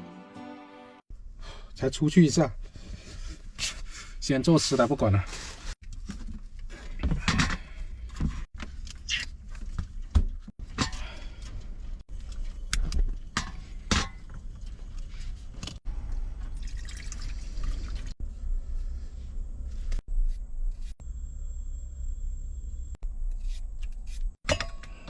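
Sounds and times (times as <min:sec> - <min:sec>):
water pouring and splashing: 0:14.6 - 0:18.2.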